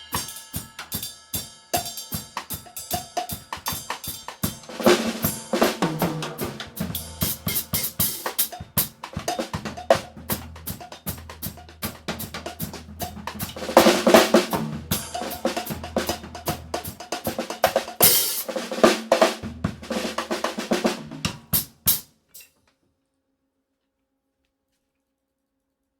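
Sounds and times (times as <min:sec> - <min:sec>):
drum kit with cowbell: 0:00.0 - 0:22.5
low bass line: 0:09.6 - 0:13.8.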